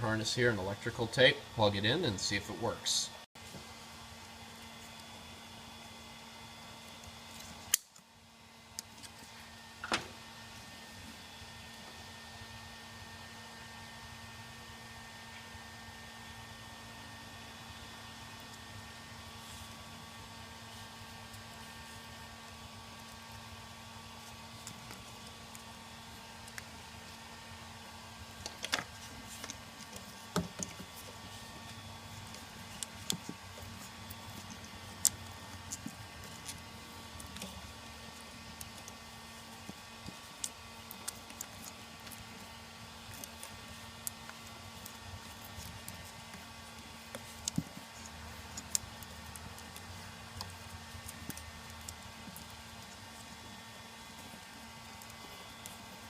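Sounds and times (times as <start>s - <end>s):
faint steady hum: 0.0s - 56.0s
hands clicking and tapping wiring: 28.4s - 53.4s
hands clicking on wiring: 43.1s - 53.3s.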